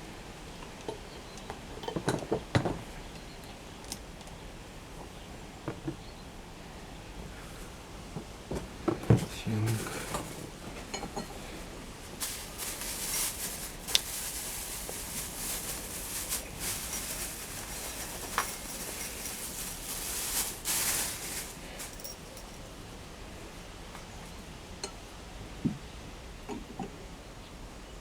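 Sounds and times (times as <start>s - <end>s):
rustling and scraping handling: 7.4s - 22.8s.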